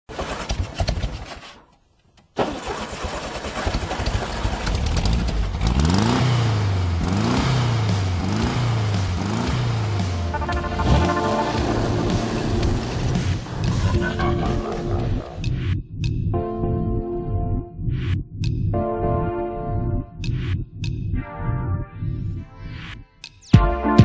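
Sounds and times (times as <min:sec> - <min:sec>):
car engine cranking and revving: 0:00.1 - 0:01.7, 0:02.4 - 0:16.1
music with bass and pitch sweep: 0:06.0 - 0:24.0.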